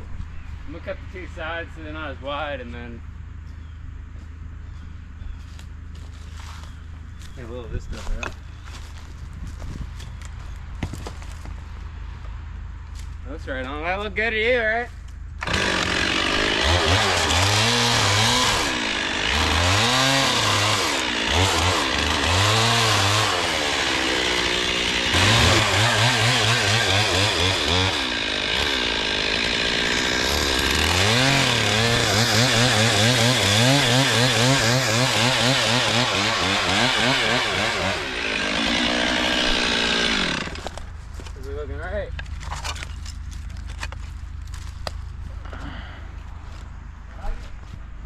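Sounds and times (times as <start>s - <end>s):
chainsaw revving and cutting: 15.4s - 40.8s.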